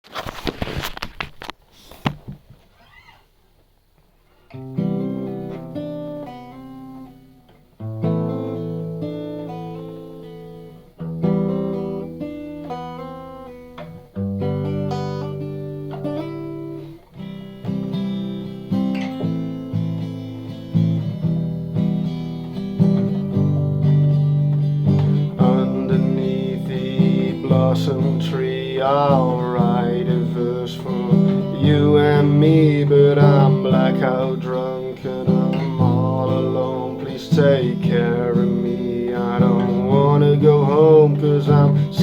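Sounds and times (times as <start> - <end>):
acoustic guitar strummed chords: 4.5 - 42.0.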